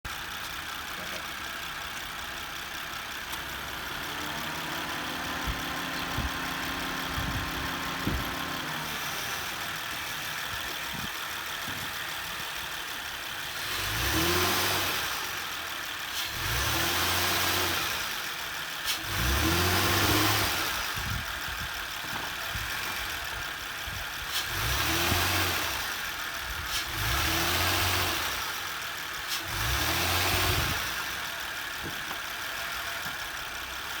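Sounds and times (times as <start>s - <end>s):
car engine idling: 0.0s - 34.0s
engine revving: 3.1s - 33.9s.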